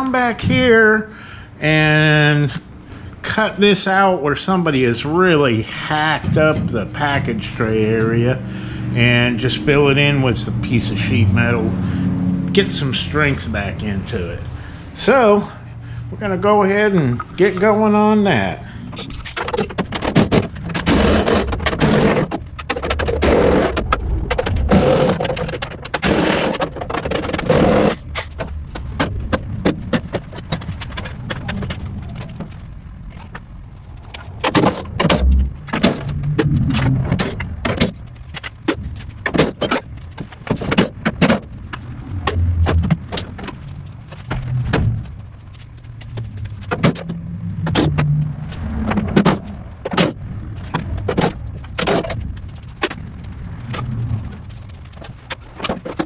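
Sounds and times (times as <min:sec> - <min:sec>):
scraping: 0:12.6 - 0:56.0
clanks of hand tools and metal parts: 0:18.8 - 0:23.0.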